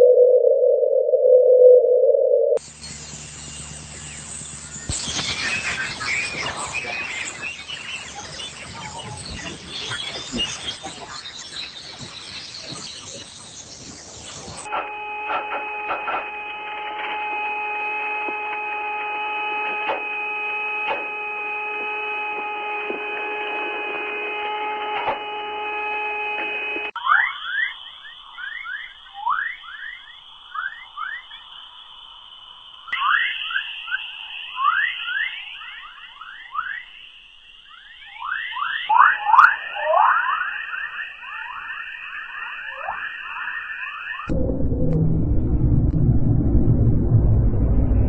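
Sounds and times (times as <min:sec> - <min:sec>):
electronic chord of held tones: 0:00.0 - 0:04.0
quick falling electronic chirps: 0:00.0 - 0:14.0
steady high hum: 0:44.3 - 0:48.0.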